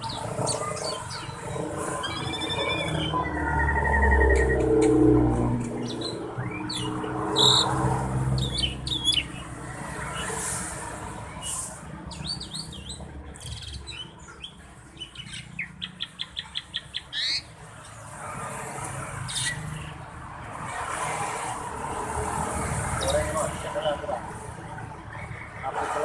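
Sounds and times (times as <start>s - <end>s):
starling singing: 0.0s - 5.0s, 5.7s - 9.6s, 12.1s - 17.6s.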